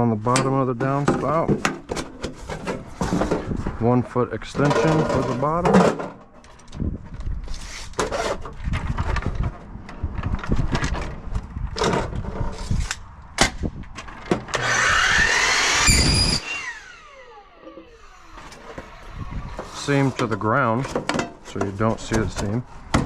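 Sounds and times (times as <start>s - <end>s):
metal downspout pieces clattering: 0.4s - 3.8s, 4.4s - 6.8s, 19.7s - 23.0s
power drill running: 14.5s - 19.6s.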